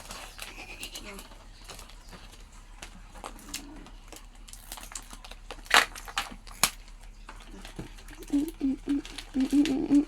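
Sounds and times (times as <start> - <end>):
sharp wrapper crackles: 0.0 - 10.0
wrapper crinkling: 0.0 - 10.0.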